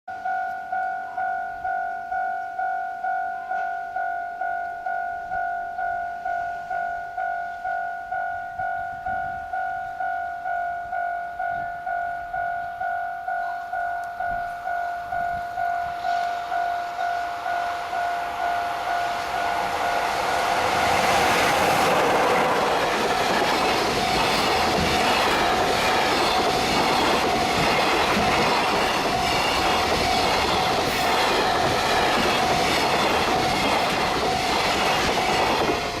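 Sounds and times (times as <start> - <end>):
level crossing warning bell: 0.1 - 36.0
freight train passing at speed: 0.2 - 36.0
wheels clacking over rail joints: 18.3 - 36.0.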